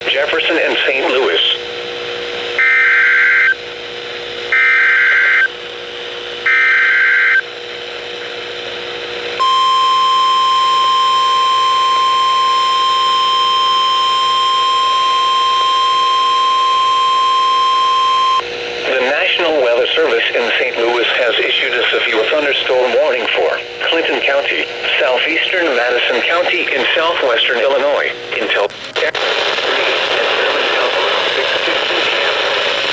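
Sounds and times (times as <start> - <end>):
screeching digital data tones: 9.4 - 18.4
steady warning alarm tone: 9.4 - 18.4.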